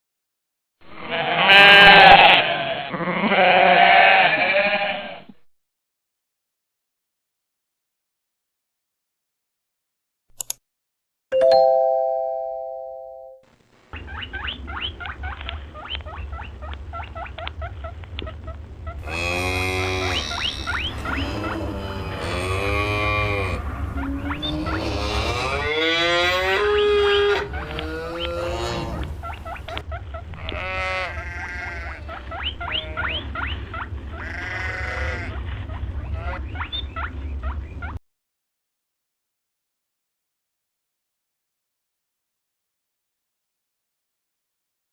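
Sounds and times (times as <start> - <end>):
goats bleating: 0.9 - 5.2, 19.0 - 23.6, 24.4 - 29.1, 30.3 - 33.2, 34.2 - 35.4.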